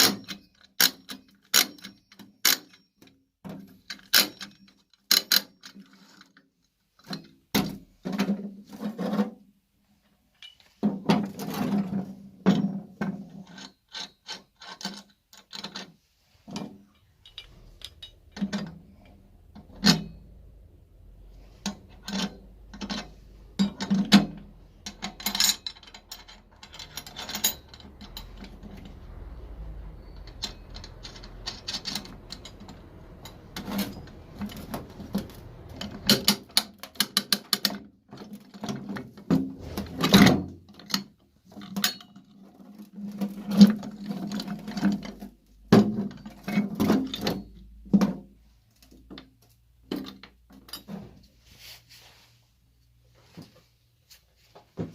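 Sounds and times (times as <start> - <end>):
faint low hum: 16.5 - 36.1
metallic clicks and knocks: 16.5 - 39.4.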